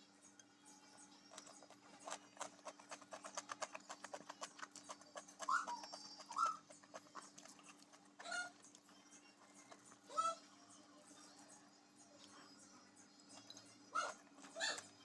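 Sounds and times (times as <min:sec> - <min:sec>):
loud high-pitched eating sounds: 0:00.1 - 0:15.0
chewing and lip-smacking: 0:01.0 - 0:10.2.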